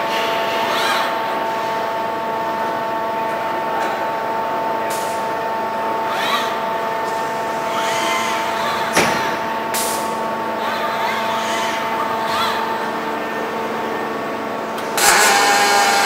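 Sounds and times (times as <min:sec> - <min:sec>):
machine hum: 0:00.0 - 0:16.0
servo motors whining: 0:15.0 - 0:16.0.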